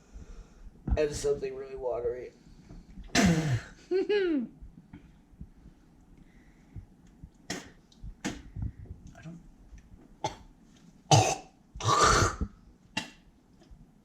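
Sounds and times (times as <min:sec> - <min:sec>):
person coughing: 0:03.1 - 0:03.8, 0:11.1 - 0:12.5.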